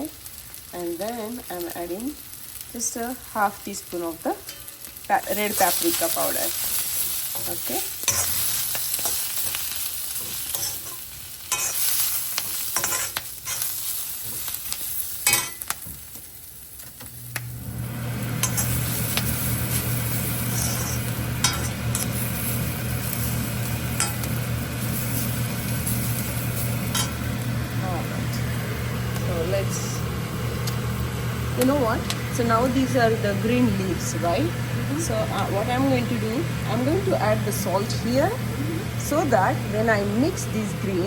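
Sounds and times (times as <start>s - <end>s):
onions sizzling in oil: 0.0s - 41.0s
spatula scraping a pan: 6.6s - 14.7s, 20.4s - 22.0s
low machine hum: 17.1s - 41.0s.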